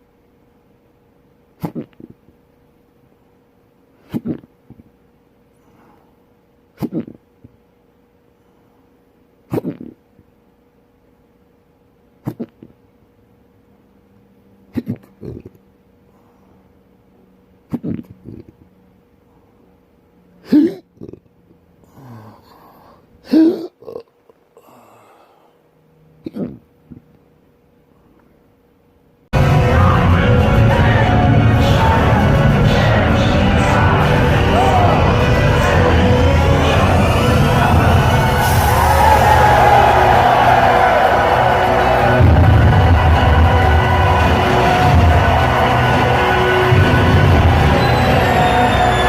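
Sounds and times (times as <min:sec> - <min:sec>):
faint steady hum: 0:00.0 - 0:49.0
person hiccuping: 0:01.6 - 0:02.2, 0:04.0 - 0:04.8, 0:06.8 - 0:07.5, 0:09.5 - 0:10.1, 0:12.2 - 0:12.8, 0:14.7 - 0:15.6, 0:17.7 - 0:18.7, 0:20.4 - 0:21.3, 0:22.0 - 0:24.8, 0:26.2 - 0:27.2.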